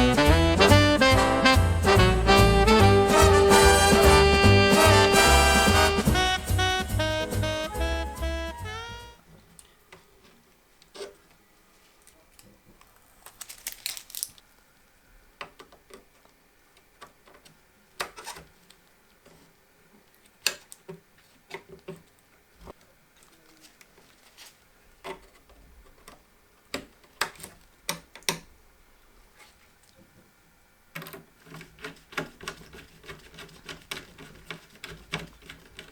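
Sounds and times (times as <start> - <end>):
plastic packaging crinkling: 11.8 - 14.5, 23.2 - 24.6.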